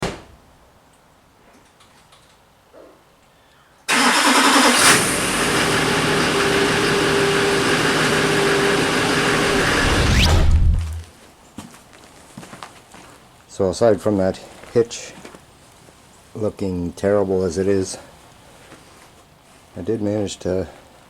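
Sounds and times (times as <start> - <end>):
rising whine: 5.1 - 11.1
vehicle engine running: 5.1 - 11.1.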